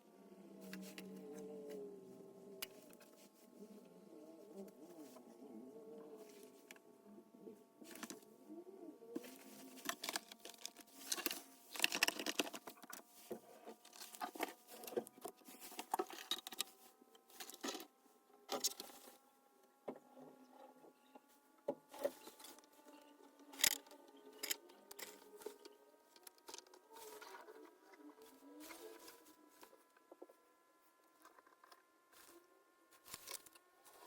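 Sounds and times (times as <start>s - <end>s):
tools clicking and rattling: 9.2s - 13.1s, 13.8s - 17.9s, 23.4s - 26.7s, 33.0s - 33.6s.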